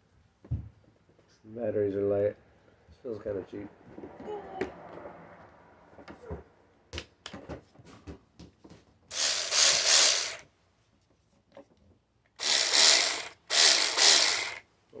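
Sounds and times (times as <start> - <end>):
cordless ratchet whirring: 9.1 - 10.4, 12.4 - 14.6.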